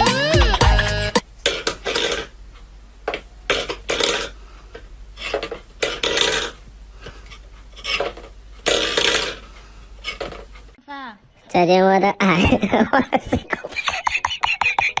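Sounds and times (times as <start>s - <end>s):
scraping and clattering noises: 1.5s - 10.8s.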